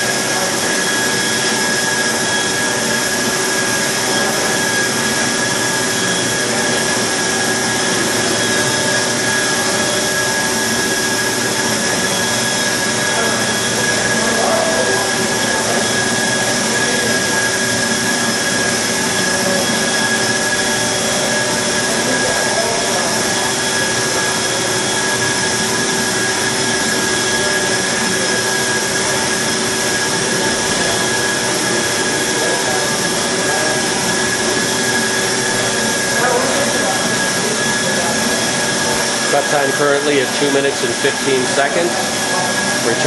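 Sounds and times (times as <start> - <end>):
bandsaw cutting: 0.0 - 43.0
machine whining tones: 0.0 - 43.0.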